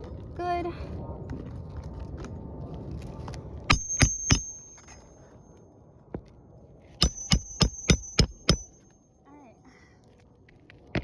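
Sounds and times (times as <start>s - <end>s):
hammer striking nails: 3.7s - 5.0s, 7.0s - 8.9s.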